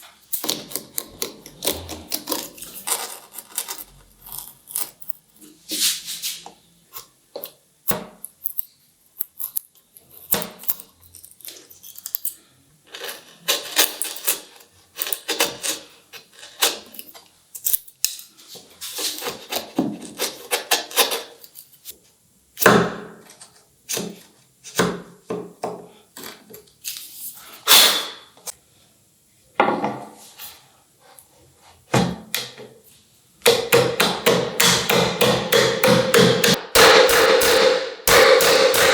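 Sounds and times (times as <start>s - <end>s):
tools knocking and scraping on workbench: 29.6s - 30.2s
rapid hammering taps: 33.5s - 38.9s.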